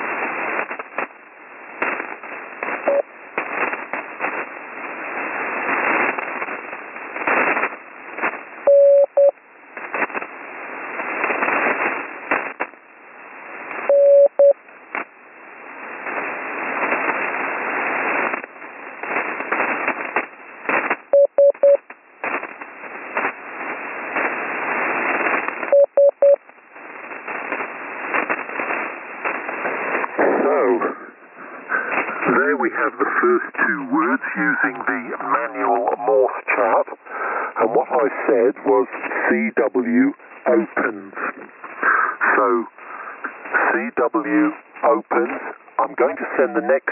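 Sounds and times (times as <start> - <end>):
crackling radio static: 0.0 - 46.9
morse code beeps: 8.7 - 9.3, 13.9 - 14.6, 21.2 - 21.8, 25.7 - 26.4.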